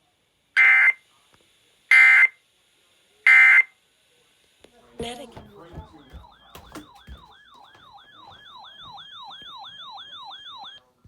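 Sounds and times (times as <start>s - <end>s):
electronic siren yelping: 0.6s - 1.0s, 1.9s - 2.3s, 3.3s - 3.7s, 6.2s - 10.8s
knocks: 5.0s - 9.6s.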